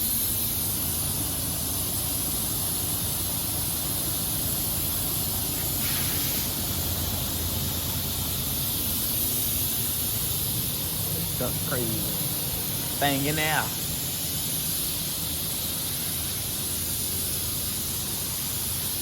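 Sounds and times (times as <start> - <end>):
steady hiss: 0.0 - 19.0
short bright hiss: 2.0 - 19.0.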